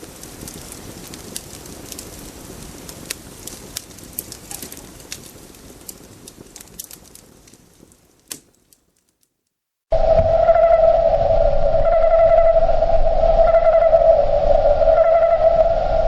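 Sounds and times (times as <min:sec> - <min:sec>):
sharp crackles and pops: 0:00.0 - 0:16.0
noisy ambience: 0:09.9 - 0:16.0.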